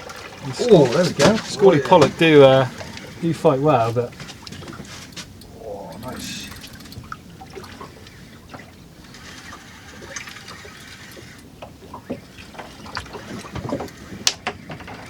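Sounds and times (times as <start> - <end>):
water slapping against boat hull: 0.0 - 15.0
fishing tackle clicking: 5.4 - 7.1.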